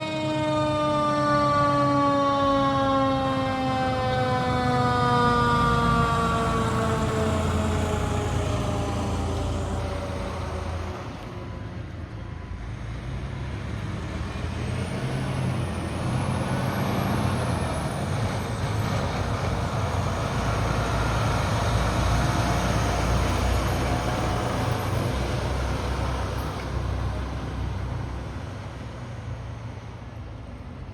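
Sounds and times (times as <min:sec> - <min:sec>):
siren winding down: 0:00.0 - 0:12.5
fire truck engines rumbling: 0:00.0 - 0:30.9.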